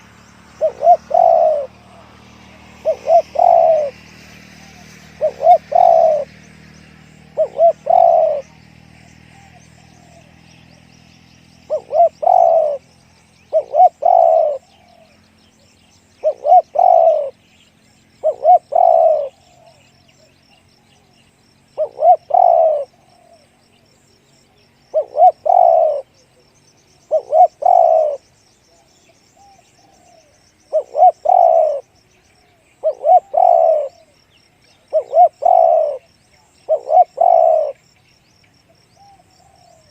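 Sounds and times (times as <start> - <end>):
dove cooing: 0.6 - 6.4, 7.2 - 10.4, 11.6 - 12.9, 13.5 - 15.2, 16.2 - 17.4, 18.2 - 19.8, 21.8 - 23.5, 24.9 - 26.2, 27.0 - 28.3, 29.4 - 31.9, 32.5 - 37.8, 39.0 - 39.9.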